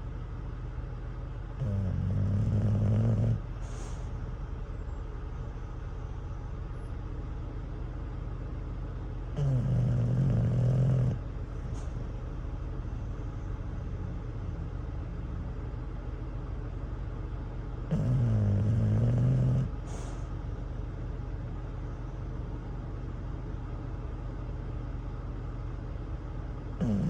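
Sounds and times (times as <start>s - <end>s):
dog snoring: 1.6s - 4.2s, 9.3s - 12.0s, 17.9s - 20.3s, 26.8s - 27.0s.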